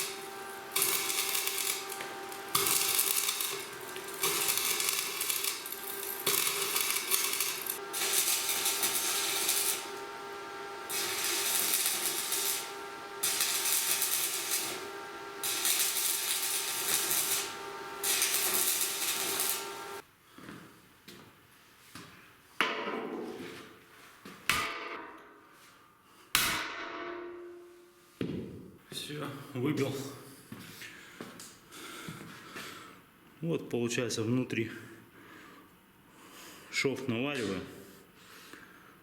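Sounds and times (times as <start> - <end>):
arc welding crackling and hissing: 0.0 - 20.0.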